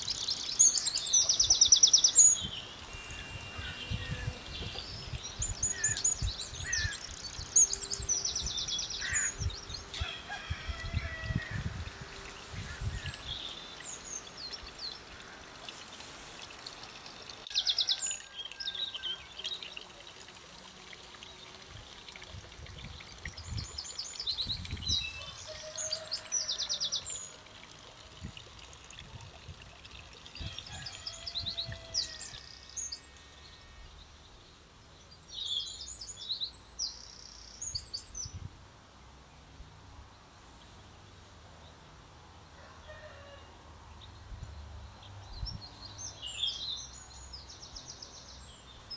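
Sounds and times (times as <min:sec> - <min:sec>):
songbird singing with trills: 0:00.0 - 0:10.0
wind gusts on microphone: 0:02.4 - 0:13.5, 0:21.8 - 0:25.4.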